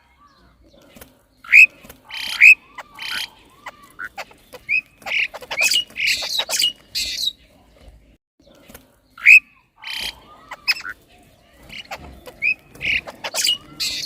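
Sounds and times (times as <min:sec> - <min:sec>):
birds chirping: 0:00.0 - 0:14.0
harsh raspy bird squawks: 0:01.4 - 0:07.4, 0:09.2 - 0:11.0, 0:11.6 - 0:14.0.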